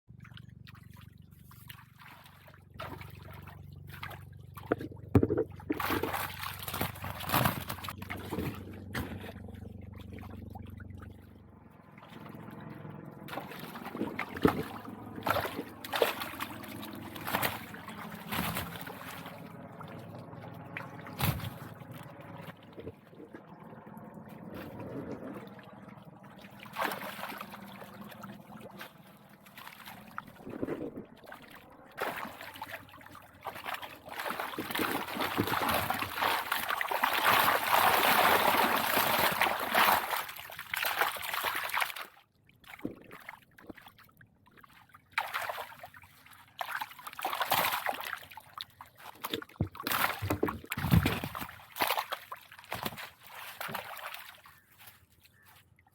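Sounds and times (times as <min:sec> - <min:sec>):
low steady hum: 0:00.1 - 0:41.4
water splashing and sloshing: 0:00.1 - 0:55.9.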